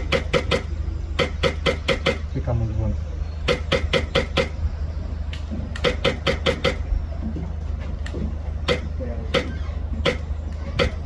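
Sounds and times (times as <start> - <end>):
airsoft gun shots: 0.0 - 2.3, 3.5 - 4.6, 5.8 - 6.9, 8.6 - 11.0.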